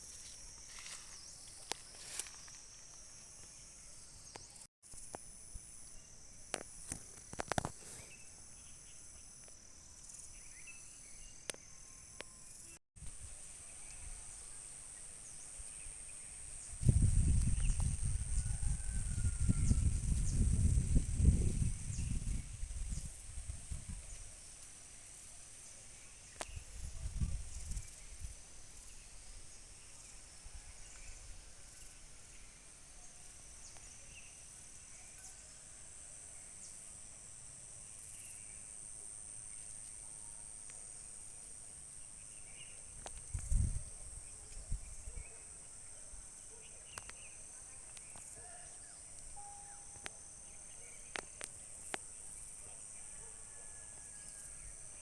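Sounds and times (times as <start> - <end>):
insects chirping: 0.0 - 55.0.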